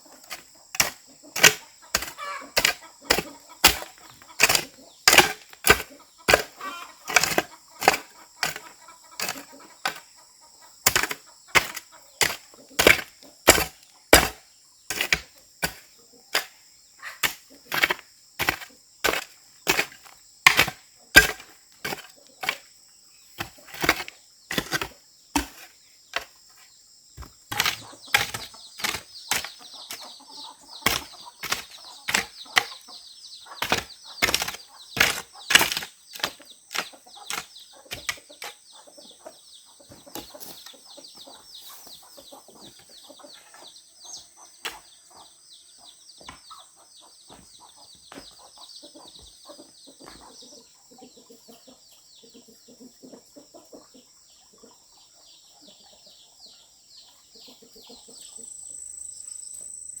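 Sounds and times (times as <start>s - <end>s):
insects buzzing: 0.0s - 50.9s, 57.4s - 60.0s.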